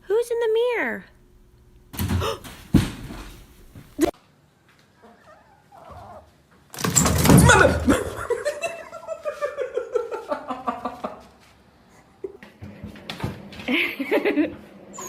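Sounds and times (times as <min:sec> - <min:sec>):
person laughing out loud: 0:07.5 - 0:11.3, 0:13.7 - 0:14.6.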